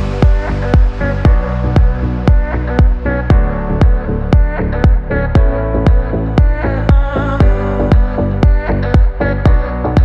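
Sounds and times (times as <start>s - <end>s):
electronic dance music: 0.0s - 10.0s.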